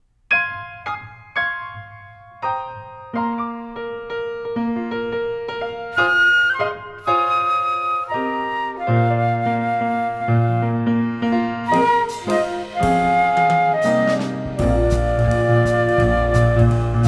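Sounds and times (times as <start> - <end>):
piano chords: 0.3 - 17.0
flute-like woodwind melody: 5.9 - 17.0.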